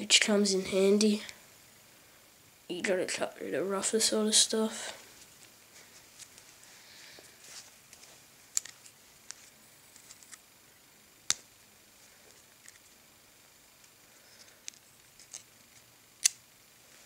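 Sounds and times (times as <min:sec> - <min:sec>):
multitool folding tools clicking: 0:08.5 - 0:08.8, 0:14.6 - 0:16.4.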